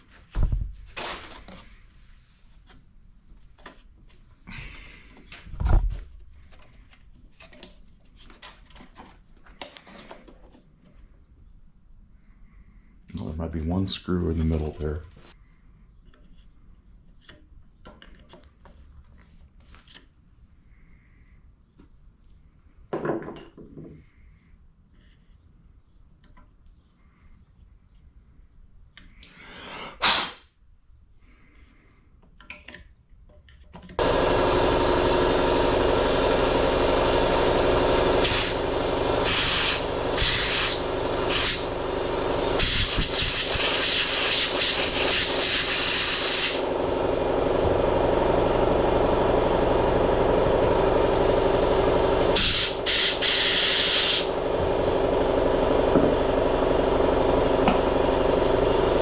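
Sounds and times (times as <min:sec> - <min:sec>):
short bursts of hiss: 0:30.0 - 0:30.4, 0:39.2 - 0:41.6, 0:42.6 - 0:46.6, 0:52.4 - 0:54.3
electric motor running: 0:34.0 - 0:59.0.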